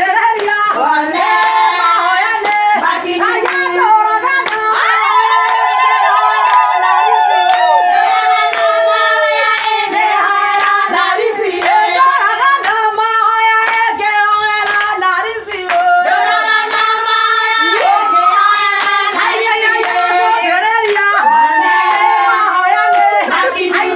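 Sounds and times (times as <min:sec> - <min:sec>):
women singing together: 0:00.0 - 0:23.9
hands clapping: 0:00.2 - 0:01.7, 0:02.4 - 0:02.7, 0:03.3 - 0:04.8, 0:05.4 - 0:05.8, 0:06.4 - 0:06.8, 0:07.4 - 0:07.8, 0:08.4 - 0:09.8, 0:10.4 - 0:10.8, 0:11.5 - 0:12.9, 0:13.6 - 0:14.0, 0:14.6 - 0:15.9, 0:16.6 - 0:17.0, 0:17.6 - 0:23.9.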